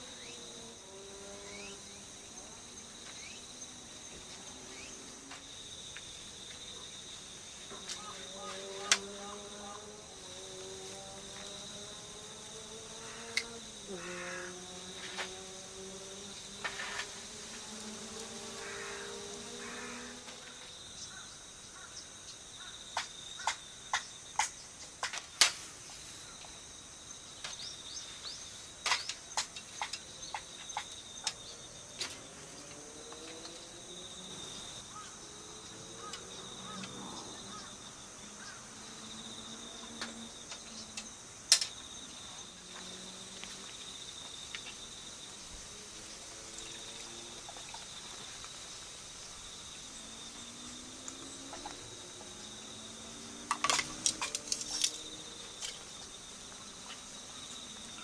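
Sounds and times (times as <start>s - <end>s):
insects chorus: 0.0s - 58.0s
sharp clicks and knocks: 53.5s - 55.0s.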